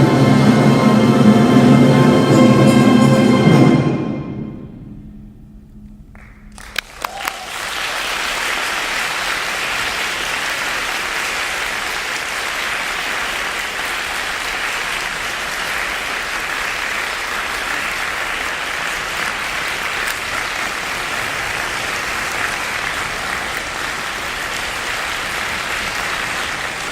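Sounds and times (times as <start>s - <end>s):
audience applauding: 6.1s - 26.9s.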